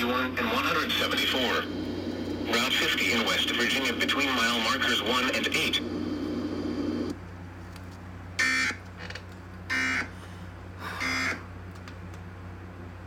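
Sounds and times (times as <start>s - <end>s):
low hum: 0.0s - 7.2s.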